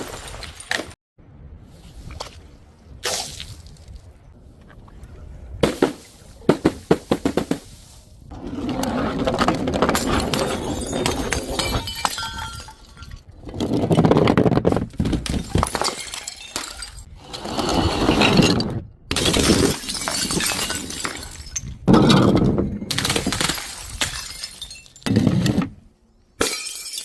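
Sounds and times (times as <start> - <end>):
glass bottles breaking: 9.9 - 13.3, 15.0 - 17.1, 19.2 - 25.2, 26.4 - 27.0.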